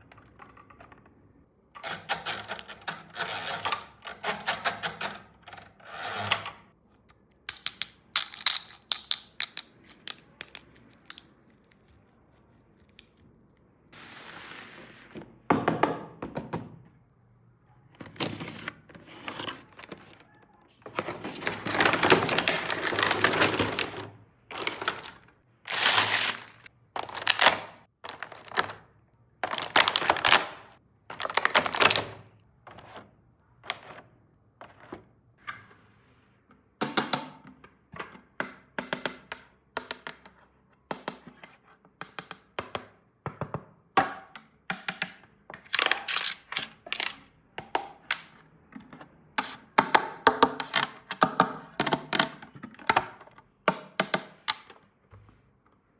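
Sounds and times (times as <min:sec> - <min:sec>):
plastic toy pieces clicking: 0:07.5 - 0:11.2
packaging crinkling and rustling: 0:20.9 - 0:32.3, 0:45.7 - 0:47.2.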